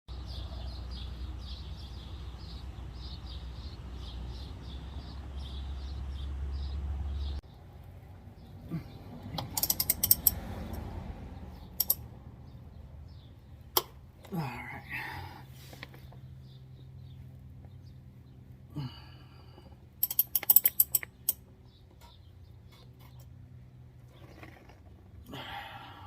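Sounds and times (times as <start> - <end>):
ratchet wrench clicking: 9.4 - 10.4, 11.7 - 12.0, 20.0 - 21.4.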